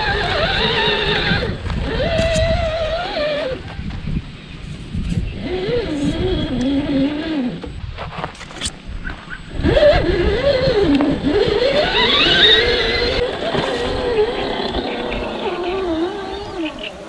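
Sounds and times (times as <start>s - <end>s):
rough drivetrain rumble: 0.0s - 8.4s, 9.0s - 17.0s
electric motor and gears whining: 0.0s - 17.0s.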